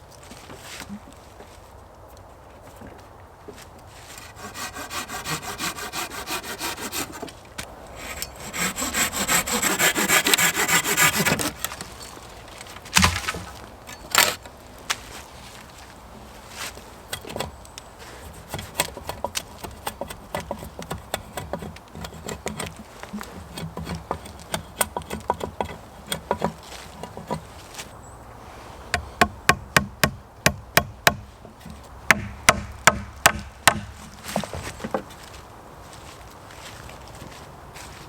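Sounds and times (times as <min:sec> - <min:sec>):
sharp clicks and knocks: 0:18.5 - 0:27.4.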